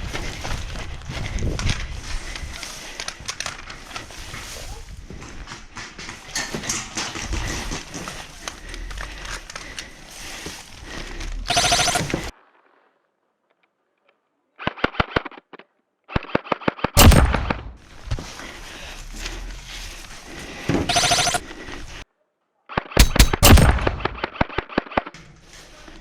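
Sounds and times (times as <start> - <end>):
noisy rattle: 5.1 - 12.3
airsoft guns firing: 11.5 - 12.3, 16.1 - 17.8, 22.8 - 25.2
loud crack: 17.0 - 17.8, 23.0 - 25.1.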